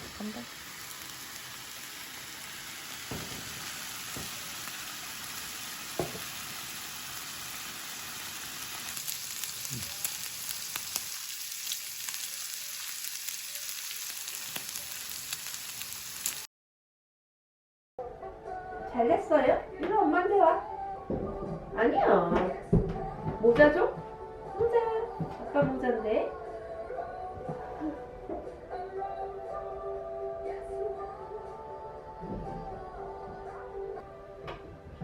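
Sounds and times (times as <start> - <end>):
pork sizzling in a frying pan: 0.0 - 16.5.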